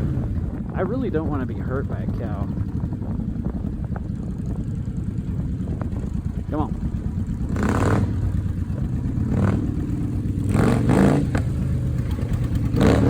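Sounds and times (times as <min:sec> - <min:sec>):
gusts of noise: 0:00.0 - 0:13.0
motorcycle engine revving: 0:00.0 - 0:13.0.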